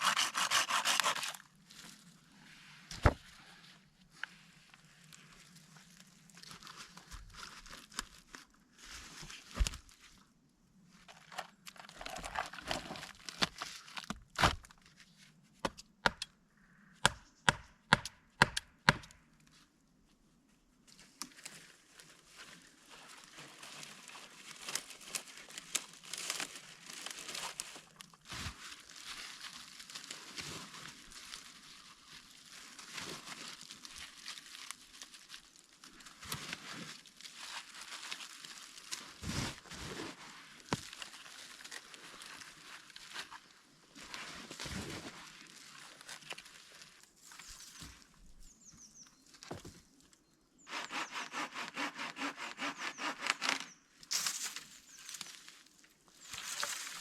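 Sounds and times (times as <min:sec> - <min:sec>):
branches crackling and rustling: 0:03.0 - 0:10.3, 0:20.9 - 0:50.3, 0:52.9 - 0:57.0
wood being chopped: 0:17.0 - 0:19.2.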